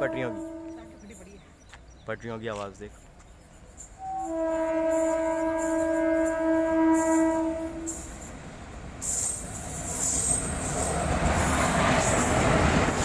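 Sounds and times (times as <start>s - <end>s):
train horn: 0.0s - 1.4s, 4.0s - 8.0s
train rumbling and rattling on tracks: 0.0s - 13.0s.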